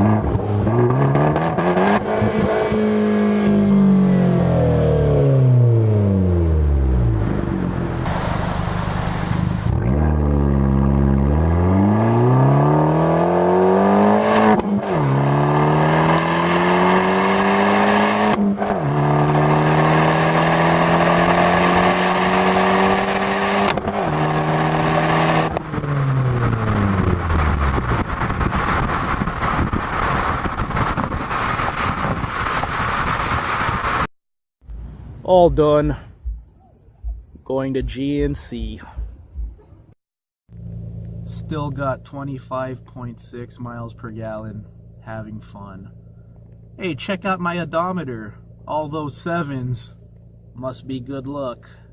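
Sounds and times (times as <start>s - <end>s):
car engine revving: 0.0s - 34.1s.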